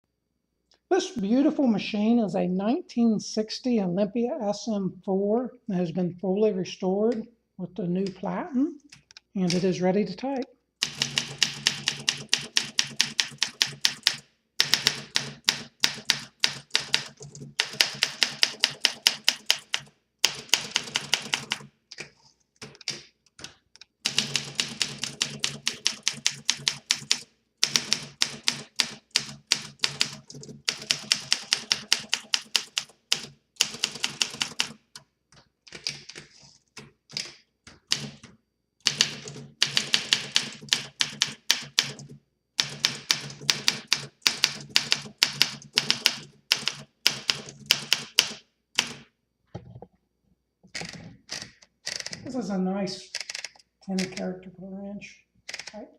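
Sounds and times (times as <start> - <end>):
manual typewriter typing: 10.8 - 49.0, 50.7 - 52.4, 53.0 - 54.3, 55.5 - 55.8.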